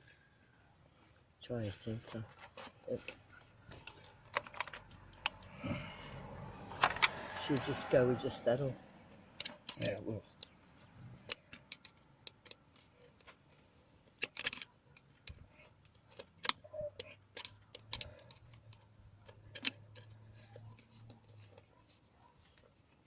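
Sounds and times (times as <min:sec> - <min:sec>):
clicks of parts being handled: 0:02.5 - 0:05.5, 0:09.4 - 0:10.6, 0:11.2 - 0:21.7.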